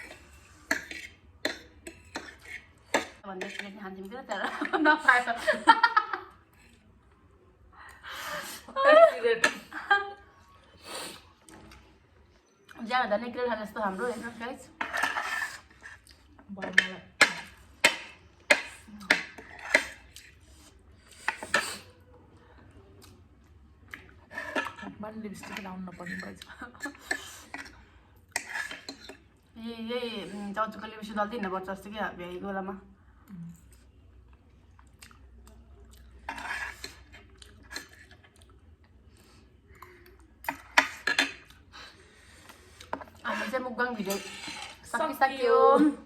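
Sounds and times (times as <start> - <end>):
utensils scraping dishes: 0.0 - 5.6, 13.9 - 16.0, 16.6 - 20.4, 24.3 - 29.2, 36.2 - 38.1, 40.5 - 41.5, 42.9 - 45.9
utensils clinking on a bowl: 24.3 - 29.2, 39.8 - 41.6, 42.9 - 45.2.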